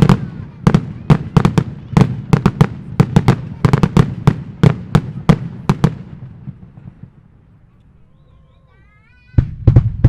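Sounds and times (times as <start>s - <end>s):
fireworks bursting: 0.0s - 10.0s
faint wavering whistle: 8.0s - 8.9s.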